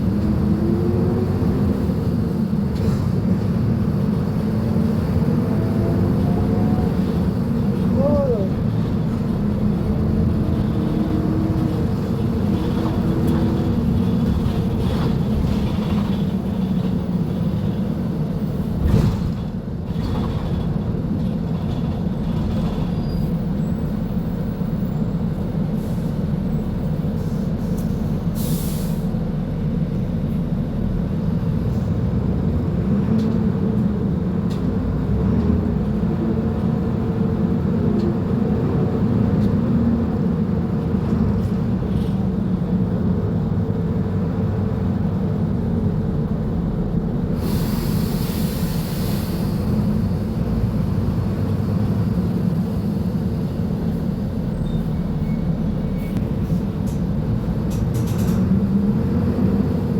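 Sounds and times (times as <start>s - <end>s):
bus diesel engine running: 0.0s - 59.9s
air hiss: 47.4s - 49.8s.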